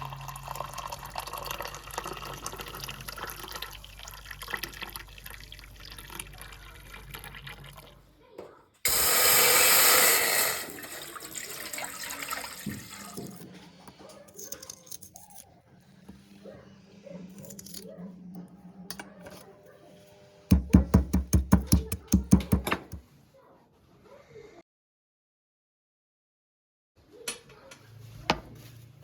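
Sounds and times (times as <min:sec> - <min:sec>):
running water: 0:08.9 - 0:13.4
utensils clinking and knocking: 0:14.1 - 0:15.5.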